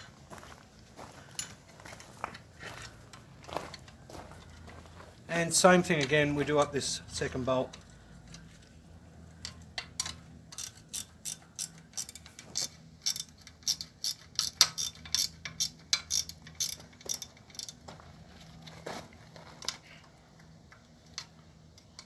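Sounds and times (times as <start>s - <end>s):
ratchet wrench clicking: 9.4s - 17.8s.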